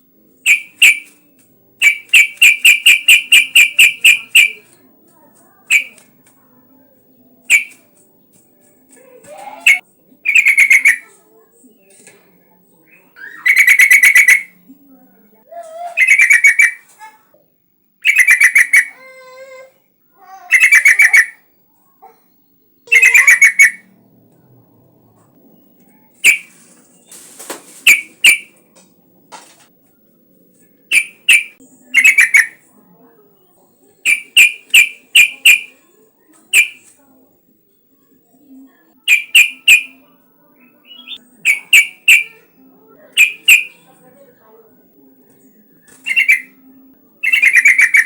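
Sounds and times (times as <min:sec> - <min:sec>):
bulbul warbling song: 0:00.4 - 0:01.2, 0:01.8 - 0:04.6, 0:05.7 - 0:06.0, 0:07.5 - 0:07.8, 0:26.2 - 0:26.5, 0:30.9 - 0:32.6, 0:36.6 - 0:36.8, 0:39.1 - 0:40.0, 0:40.7 - 0:42.4, 0:43.2 - 0:43.8, 0:46.0 - 0:46.5.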